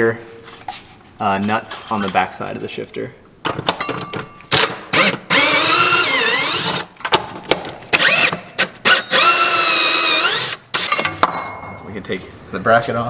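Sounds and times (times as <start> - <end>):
cordless power tool motor whine: 4.5 - 6.9, 7.9 - 11.3.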